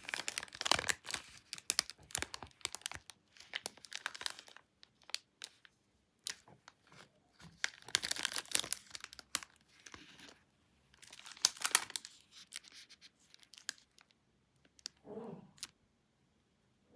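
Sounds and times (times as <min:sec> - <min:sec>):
plastic wrapper crinkling and tearing: 0:00.0 - 0:15.0.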